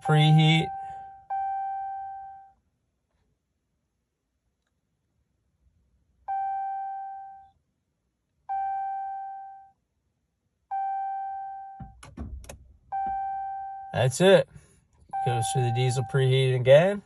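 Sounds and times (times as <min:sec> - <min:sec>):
dashboard warning chime: 0:00.0 - 0:02.6, 0:06.3 - 0:07.5, 0:08.5 - 0:09.8, 0:10.7 - 0:12.0, 0:12.9 - 0:14.4, 0:15.1 - 0:17.0.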